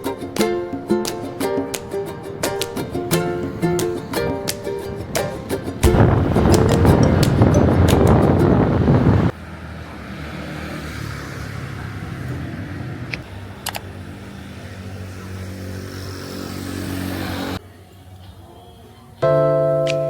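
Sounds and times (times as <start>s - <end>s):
street noise: 0.0s - 19.9s
vehicle engine running: 2.1s - 9.3s
sharp clicks: 13.1s - 13.9s.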